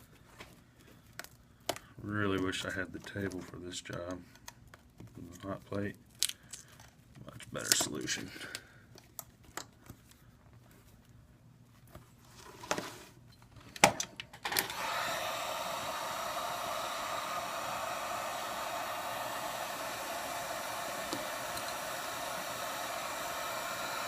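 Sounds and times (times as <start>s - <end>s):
hot air gun blowing: 14.7s - 24.0s.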